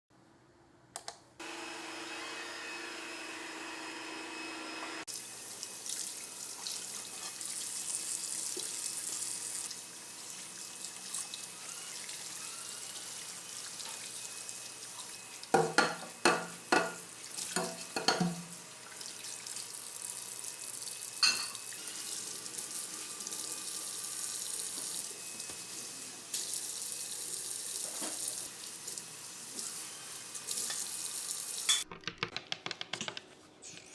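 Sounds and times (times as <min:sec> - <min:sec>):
tap water running into sink: 0:05.1 - 0:31.9.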